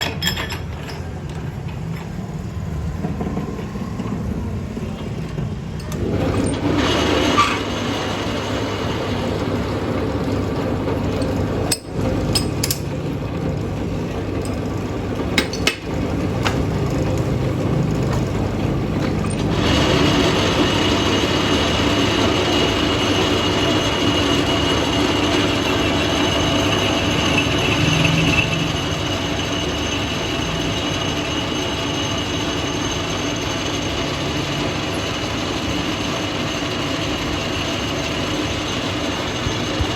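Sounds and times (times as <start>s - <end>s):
lathe motor humming: 1.2s - 39.9s
sharp clicks and knocks: 15.4s - 17.3s.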